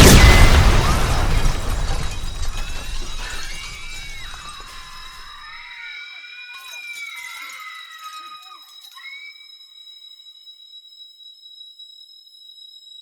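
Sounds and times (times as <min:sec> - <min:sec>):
explosion rumble: 0:00.0 - 0:05.0
glass and debris clattering: 0:00.0 - 0:05.6
wavering cries: 0:02.4 - 0:09.8
high ringing tone: 0:02.5 - 0:10.3.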